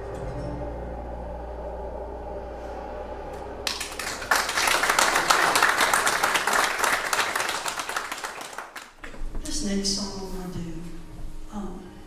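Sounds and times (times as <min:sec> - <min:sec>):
congregation applauding: 0:03.6 - 0:09.2.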